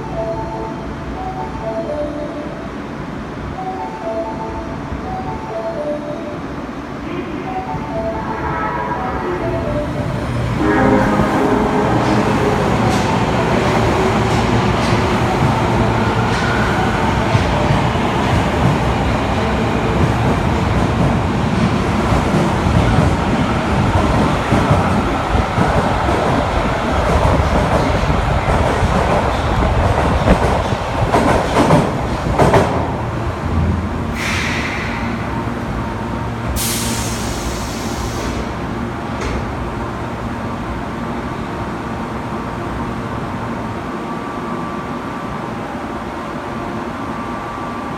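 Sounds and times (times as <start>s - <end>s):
subway train rumble and hiss: 0.0s - 47.9s
air brake hiss: 34.1s - 35.4s, 36.6s - 38.5s.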